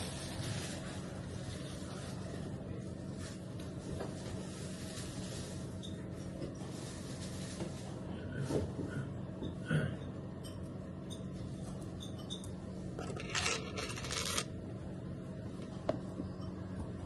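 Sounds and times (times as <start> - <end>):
rustling or scraping: 0.0 - 2.3, 3.1 - 8.0, 13.0 - 14.5
steady low hum: 0.0 - 17.0.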